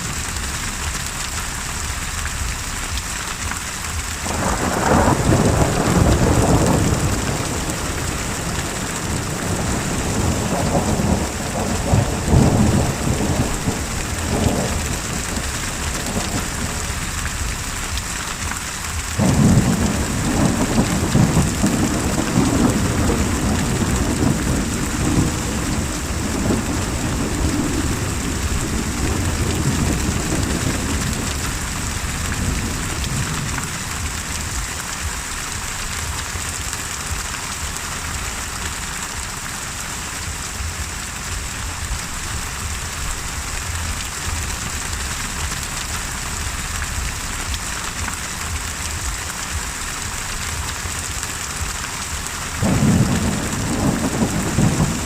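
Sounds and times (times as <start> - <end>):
heavy rain: 0.0 - 55.0
rolling thunder: 4.0 - 36.0, 52.6 - 55.0.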